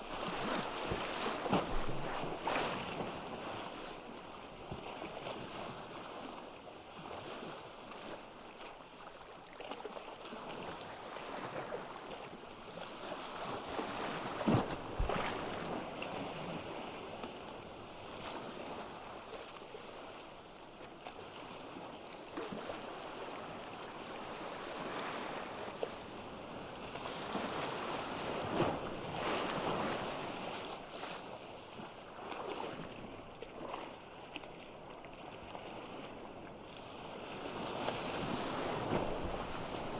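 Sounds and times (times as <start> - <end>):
waves breaking: 37.8 - 39.9.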